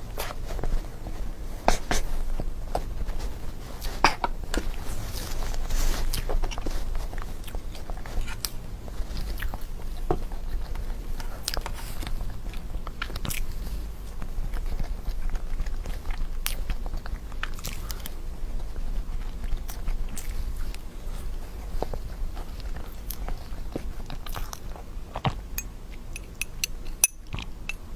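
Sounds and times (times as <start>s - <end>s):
low steady hum: 0.0s - 27.9s.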